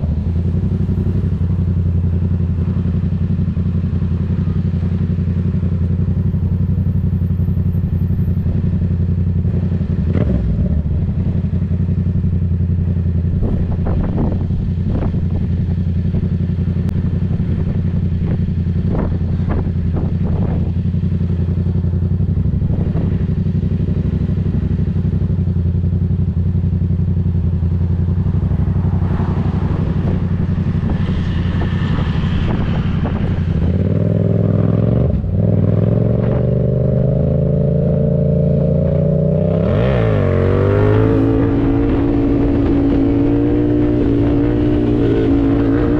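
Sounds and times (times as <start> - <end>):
motorcycle engine idling: 0.0 - 31.7
motorcycle revving pulling away: 0.0 - 45.9.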